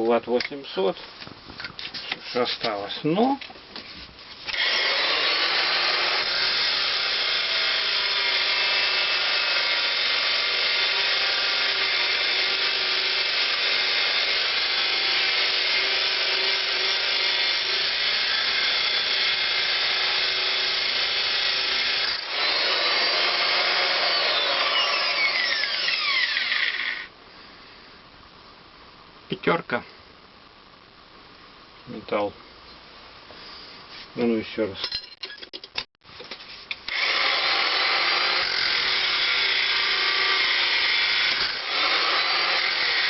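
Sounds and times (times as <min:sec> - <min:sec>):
angle grinder whining: 0:04.5 - 0:27.1, 0:36.9 - 0:43.0.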